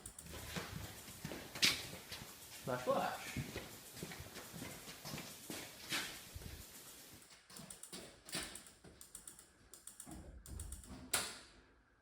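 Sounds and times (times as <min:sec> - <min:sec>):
flasher relay clicking: 0:00.0 - 0:02.5, 0:06.8 - 0:11.6.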